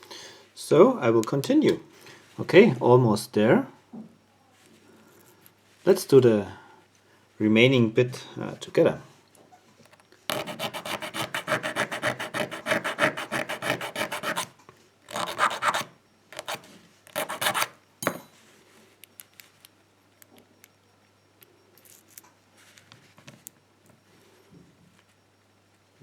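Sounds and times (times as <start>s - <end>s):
file rasping on metal key: 10.3s - 14.5s, 15.1s - 17.7s.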